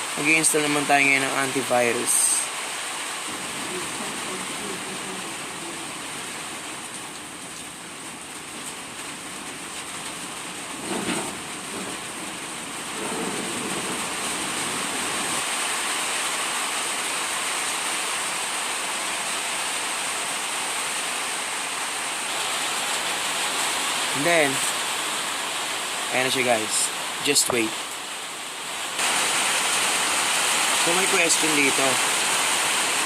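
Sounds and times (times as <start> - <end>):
steady rushing hiss: 22.0 - 33.0.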